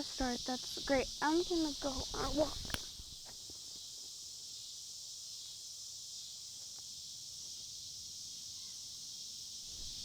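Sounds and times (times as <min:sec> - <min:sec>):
night insects chirping: 0:00.0 - 0:10.0
faint ticks: 0:06.6 - 0:06.9.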